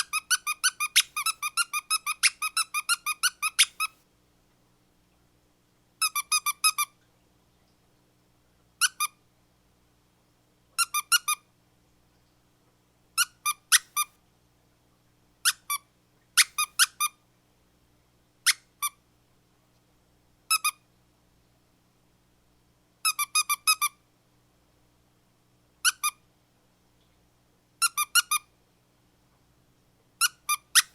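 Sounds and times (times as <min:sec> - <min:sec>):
squeaky dog toy squeaking: 0:00.0 - 0:04.0, 0:06.0 - 0:06.9, 0:08.8 - 0:09.2, 0:10.8 - 0:11.4, 0:13.2 - 0:14.1, 0:15.4 - 0:15.8, 0:16.4 - 0:17.2, 0:18.4 - 0:19.0, 0:20.5 - 0:20.8, 0:23.0 - 0:24.0, 0:25.8 - 0:26.2, 0:27.8 - 0:28.5, 0:30.2 - 0:30.9.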